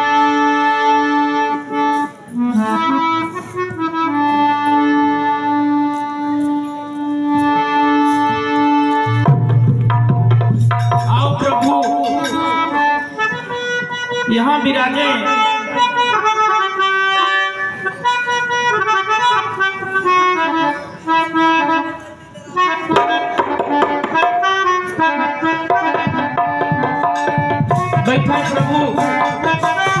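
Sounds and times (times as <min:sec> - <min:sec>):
harmonium chords: 0:00.0 - 0:30.0
tabla beat: 0:08.6 - 0:14.3, 0:22.9 - 0:30.0.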